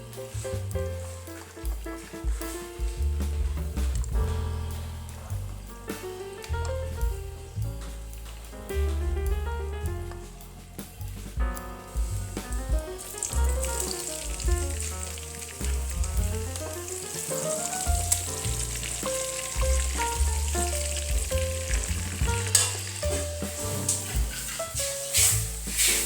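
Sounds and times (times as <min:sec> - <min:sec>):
background music: 0:00.0 - 0:26.0
food frying sizzle: 0:13.0 - 0:26.0.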